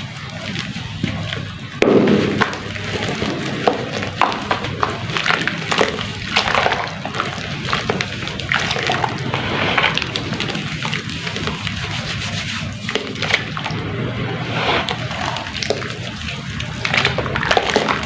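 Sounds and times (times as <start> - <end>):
water sloshing: 0.0 - 18.0
cement chunks crumbling: 0.8 - 9.2.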